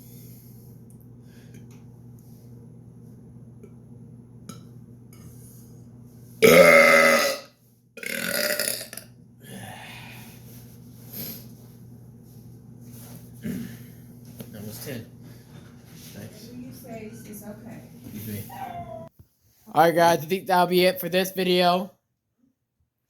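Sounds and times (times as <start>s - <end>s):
man burping loudly: 6.4s - 9.0s
faint throat sounds: 13.4s - 13.9s.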